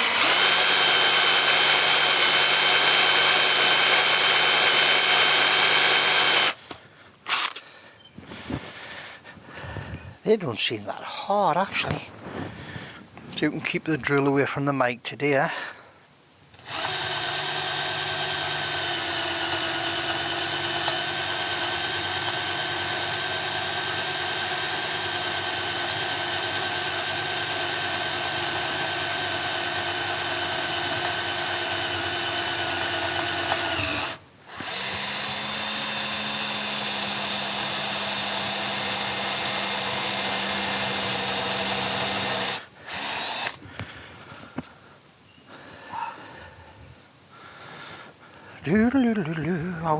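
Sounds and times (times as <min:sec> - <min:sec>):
electric drill boring into metal: 0:00.0 - 0:06.6, 0:07.3 - 0:07.7, 0:16.6 - 0:43.6.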